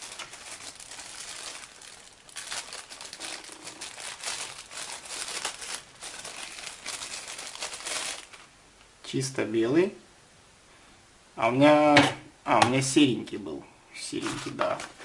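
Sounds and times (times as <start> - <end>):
plastic packaging crinkling: 0.0 - 8.5, 14.1 - 15.0.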